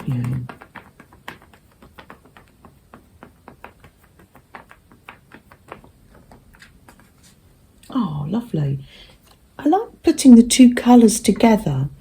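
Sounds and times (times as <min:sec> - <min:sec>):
craft tools tapping on paper: 0:00.0 - 0:07.6.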